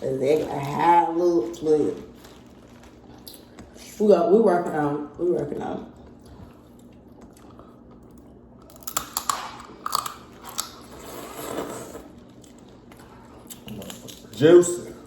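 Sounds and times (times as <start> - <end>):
person chewing and crunching: 1.9 - 3.8, 5.9 - 15.0.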